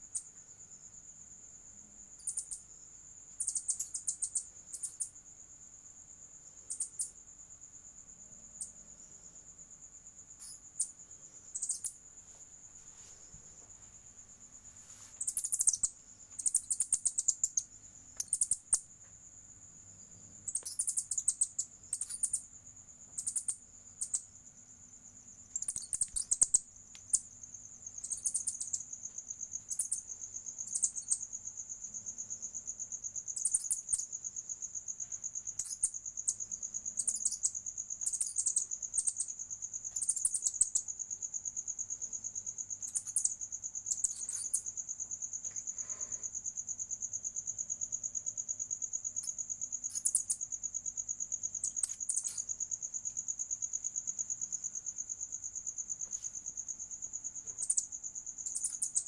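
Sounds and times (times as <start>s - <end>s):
insect trilling: 2.2s - 2.6s, 10.3s - 12.0s, 14.9s - 18.9s, 20.4s - 22.5s, 23.1s - 24.3s, 25.5s - 31.7s, 33.2s - 34.2s, 35.0s - 41.0s, 42.8s - 44.9s, 49.1s - 52.6s, 55.8s - 59.0s
very high chirps: 25.6s - 26.6s.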